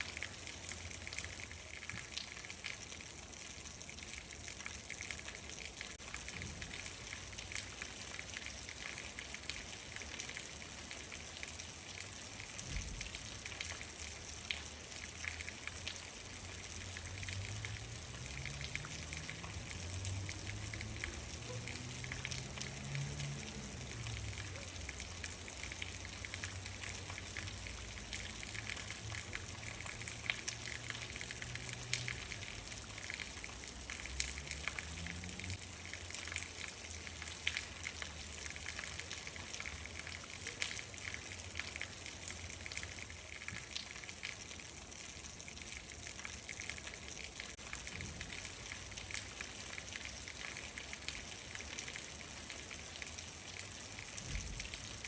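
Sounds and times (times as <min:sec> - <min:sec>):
rain drops ticking on a surface: 0:00.0 - 0:55.0.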